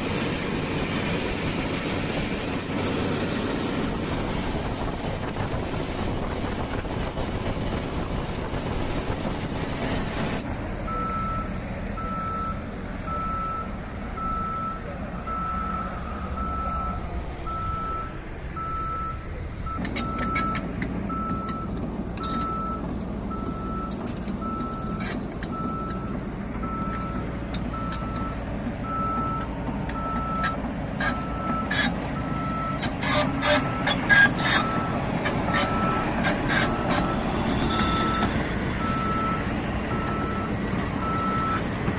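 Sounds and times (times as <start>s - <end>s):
diesel engine rumble: 0.0s - 41.9s
warning alarm beeping: 27.8s - 41.6s.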